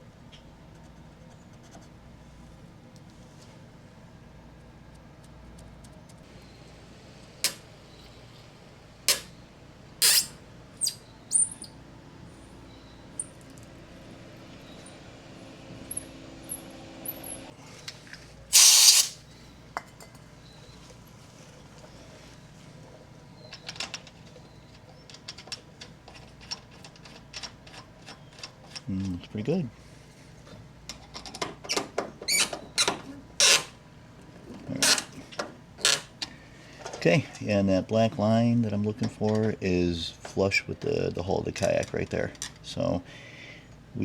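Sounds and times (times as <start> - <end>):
tools squeaking and clicking: 10.0 - 11.8, 23.4 - 28.9, 31.0 - 33.7.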